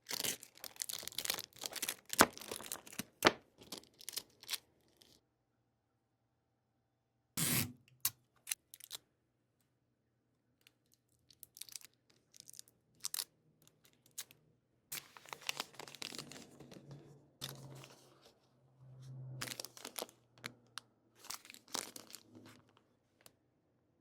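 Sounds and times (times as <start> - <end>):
packaging crinkling and tearing: 0.0 - 5.2, 8.5 - 9.0, 11.3 - 18.1, 19.4 - 22.8.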